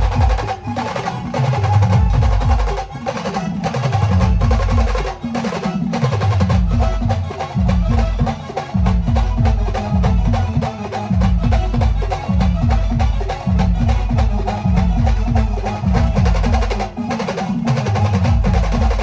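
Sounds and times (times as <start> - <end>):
heavy bass drum strokes: 0.0 - 0.5, 6.5 - 16.9
live band playing: 0.0 - 19.0.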